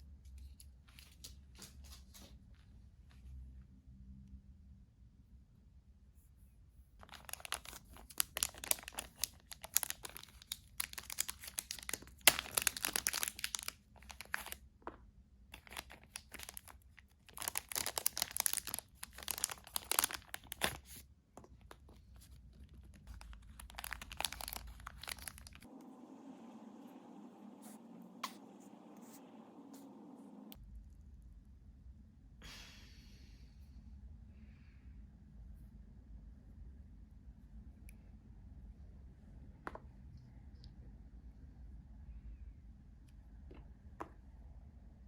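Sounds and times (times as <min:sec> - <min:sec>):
packaging tearing and crinkling: 0:07.0 - 0:14.6, 0:15.6 - 0:21.0, 0:22.7 - 0:25.7.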